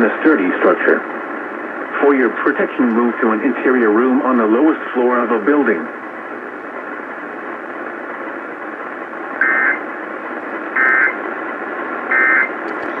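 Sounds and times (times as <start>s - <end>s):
radio static hiss: 0.0s - 13.0s
two-tone digital data bursts: 9.4s - 9.8s, 10.8s - 11.2s, 12.1s - 12.5s.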